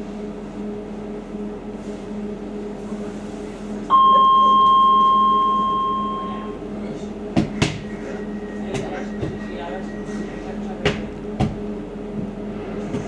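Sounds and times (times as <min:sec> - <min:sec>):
stopped train humming: 0:00.0 - 0:13.0
train door warning beep: 0:03.9 - 0:06.6.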